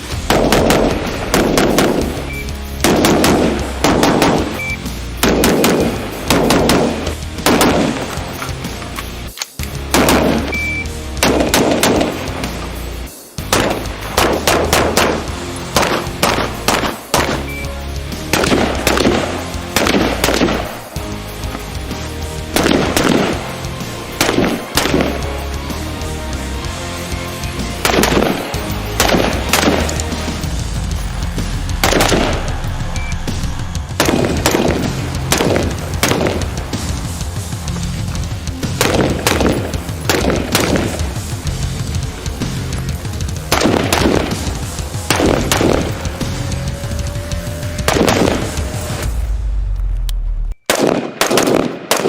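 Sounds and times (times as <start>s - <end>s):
rifle gunshots: 0.0s - 8.6s, 9.8s - 10.6s, 11.2s - 12.6s, 13.4s - 17.4s, 18.2s - 21.6s, 22.5s - 25.2s, 27.8s - 30.5s, 31.2s - 37.0s, 38.6s - 41.4s, 43.0s - 46.1s, 47.8s - 49.0s, 50.7s - 52.0s
background music: 0.0s - 52.0s.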